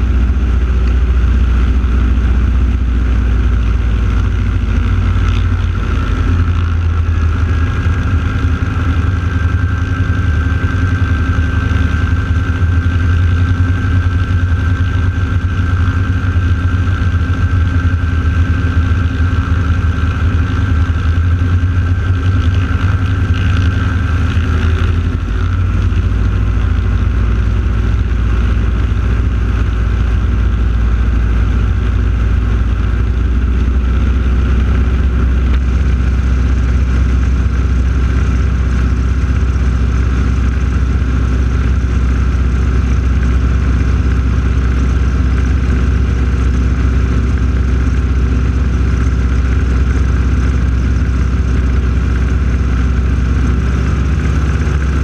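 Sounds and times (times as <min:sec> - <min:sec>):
radial aircraft engines droning: 0:00.0 - 0:55.0.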